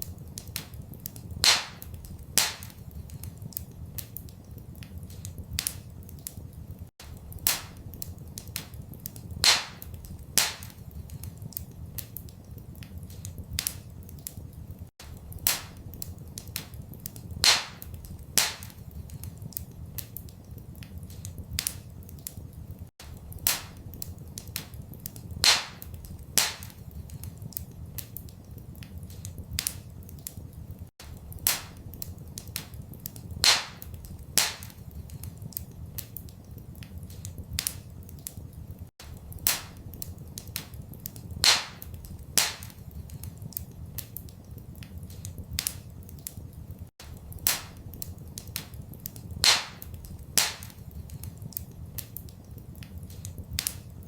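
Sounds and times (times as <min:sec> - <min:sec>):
wood fire crackling and popping: 0:00.0 - 0:54.0.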